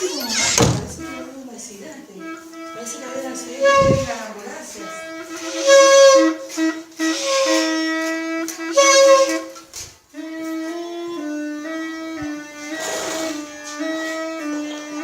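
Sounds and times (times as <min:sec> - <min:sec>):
wind instruments playing held notes: 0:02.4 - 0:09.6.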